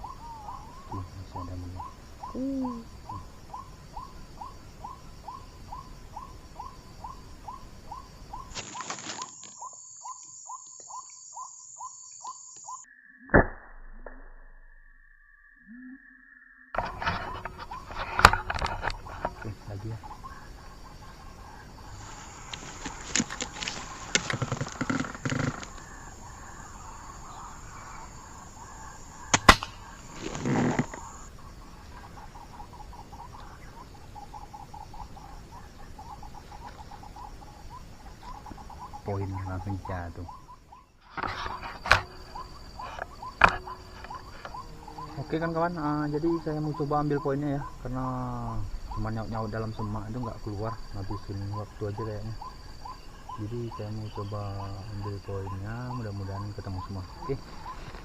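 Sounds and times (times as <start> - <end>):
bird flapping in vegetation: 8.5 - 9.6, 21.9 - 25.9, 29.5 - 31.2
short repeated bird calls: 17.0 - 31.3, 31.9 - 45.2
air rifle shot: 29.2 - 30.0.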